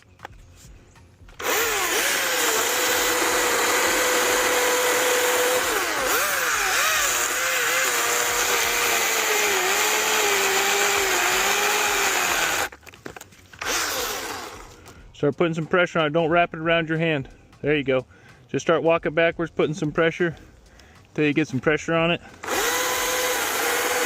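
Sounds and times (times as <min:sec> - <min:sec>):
electric chainsaw cutting tree: 0:01.4 - 0:12.8, 0:13.6 - 0:14.9, 0:22.3 - 0:24.0.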